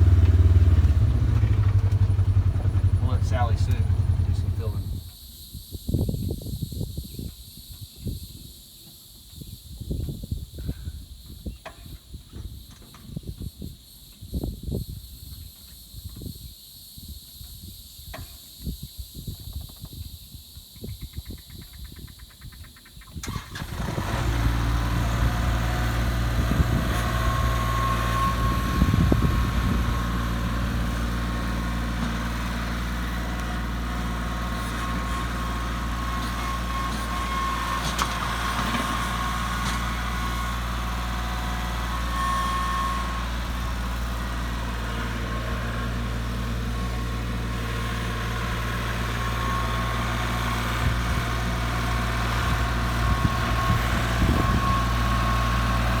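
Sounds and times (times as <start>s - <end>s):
engine knocks: 0.0s - 5.1s
tractor engine running: 0.0s - 5.1s, 23.2s - 56.0s.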